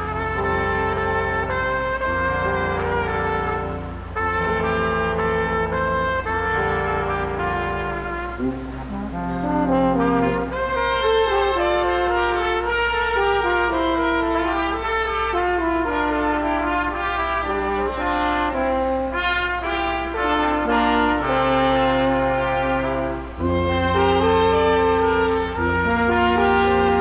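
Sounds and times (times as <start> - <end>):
brass ensemble playing chords: 0.0 - 27.0.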